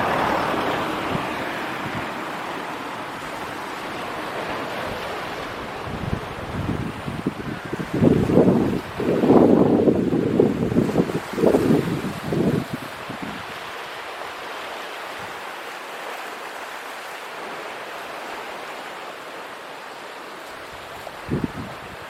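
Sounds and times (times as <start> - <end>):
wind buffeting microphone: 0.0 - 13.9, 20.6 - 22.0
strong wind: 0.0 - 15.5, 20.5 - 22.0
sea surf: 0.0 - 22.0.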